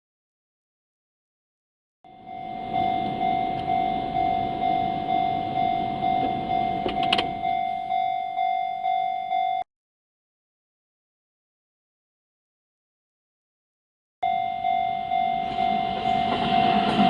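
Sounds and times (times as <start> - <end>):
low road rumble: 2.1 - 9.6, 14.2 - 17.0
level crossing warning bell: 2.1 - 9.7, 14.2 - 17.0.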